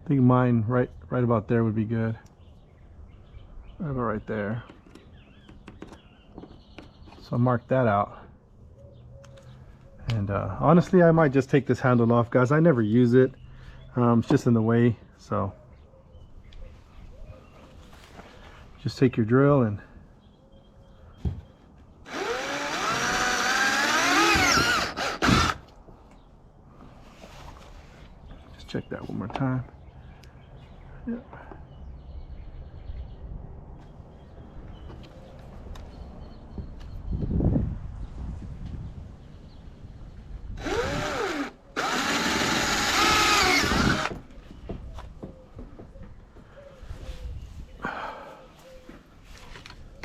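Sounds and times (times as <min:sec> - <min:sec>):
electric drill boring: 0:22.1 - 0:25.6, 0:40.6 - 0:44.2.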